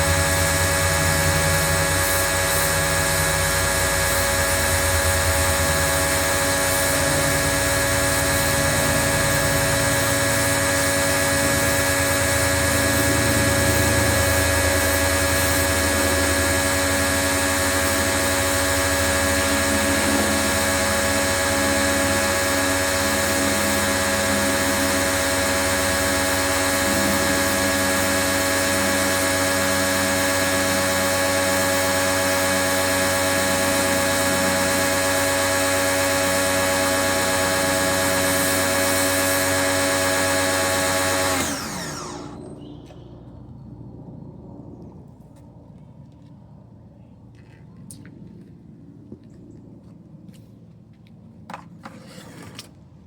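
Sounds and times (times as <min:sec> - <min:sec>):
pressure washer whine: 0:00.0 - 0:43.2
low pulsing rumble: 0:42.4 - 0:48.4.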